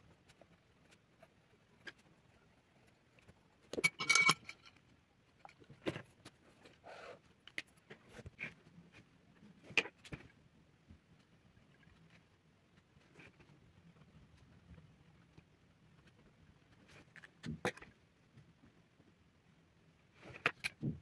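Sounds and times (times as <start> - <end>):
small clinks with ringing: 3.8 - 4.8.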